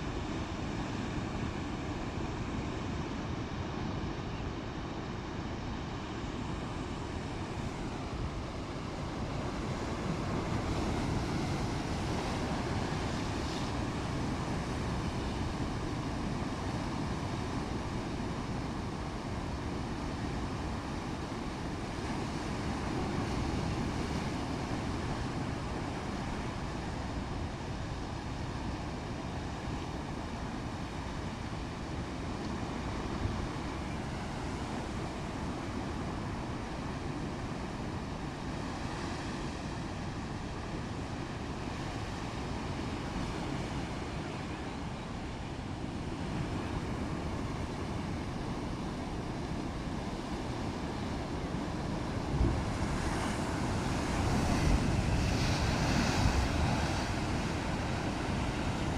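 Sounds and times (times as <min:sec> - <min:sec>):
strong wind: 0:00.0 - 0:58.9
stormy sea waves churning: 0:05.0 - 0:58.9
wind rumbling on microphone: 0:21.9 - 0:58.9.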